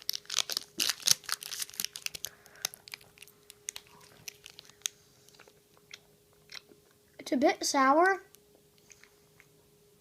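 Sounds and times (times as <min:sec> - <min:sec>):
person chewing candy: 0:00.0 - 0:07.0.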